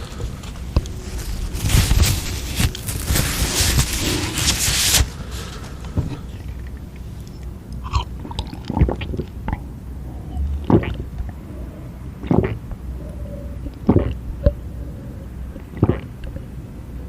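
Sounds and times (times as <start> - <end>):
loud rustle: 0.0 - 6.3.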